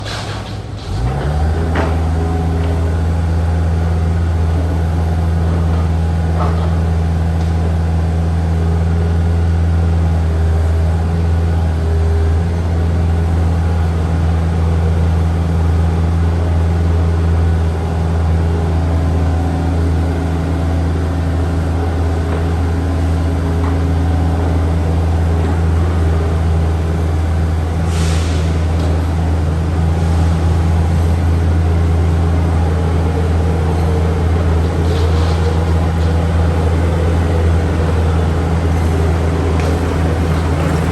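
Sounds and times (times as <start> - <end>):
excavator diesel engine running: 0.0 - 40.9.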